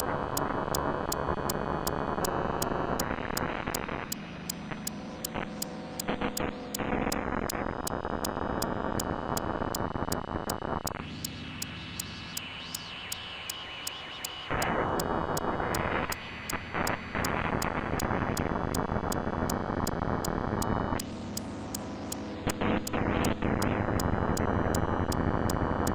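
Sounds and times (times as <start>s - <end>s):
steady high ticking pulse: 0.0s - 8.7s, 18.7s - 25.9s.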